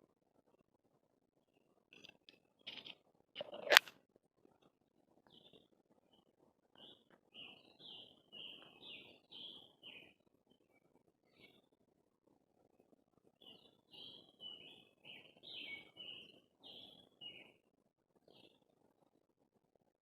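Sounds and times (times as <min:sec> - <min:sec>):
sharp click: 0:02.7 - 0:03.9
bird chirping: 0:06.8 - 0:10.2, 0:13.4 - 0:17.6.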